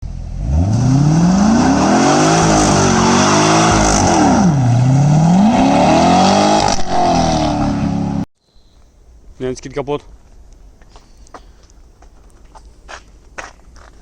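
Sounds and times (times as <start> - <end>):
car engine revving: 0.1 - 8.3.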